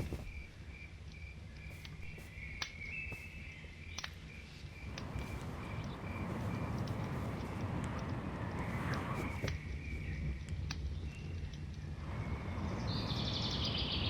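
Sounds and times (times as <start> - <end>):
crickets chirping: 0.0 - 10.4
faint clicks: 0.0 - 12.0
rustling hiss: 1.6 - 14.0.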